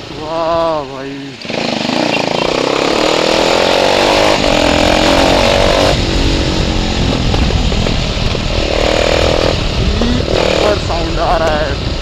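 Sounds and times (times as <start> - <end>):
motorcycle engine revving: 1.3 - 12.0
exhaust pops and crackles: 4.3 - 12.0.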